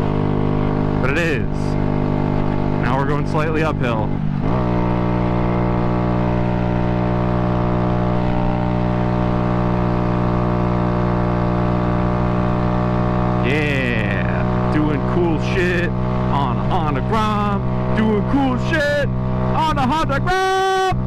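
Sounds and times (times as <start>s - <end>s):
small engine at full throttle: 0.0s - 21.0s.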